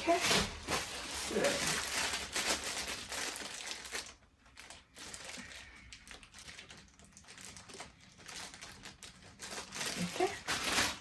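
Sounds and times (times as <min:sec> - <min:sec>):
packaging rustling: 0:00.0 - 0:11.0.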